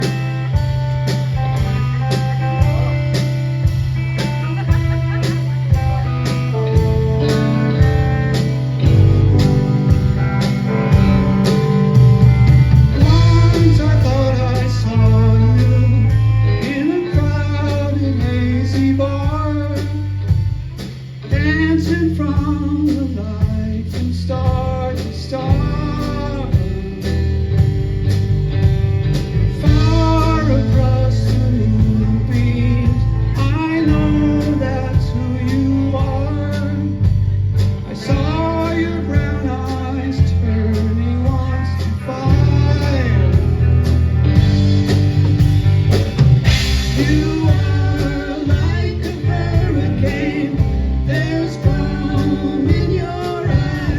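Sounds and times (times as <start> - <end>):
guitar: 0.0 - 53.9
heavy bass line: 0.0 - 53.9
person singing: 4.2 - 20.4, 21.3 - 27.2, 29.6 - 37.2, 37.8 - 43.7, 46.5 - 53.9.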